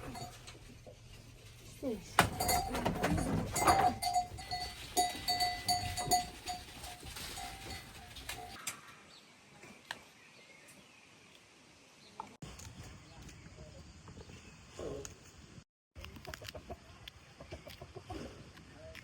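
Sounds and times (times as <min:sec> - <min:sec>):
small bell clinking: 0:00.0 - 0:00.7, 0:02.2 - 0:08.6
livestock moving about: 0:00.0 - 0:08.6.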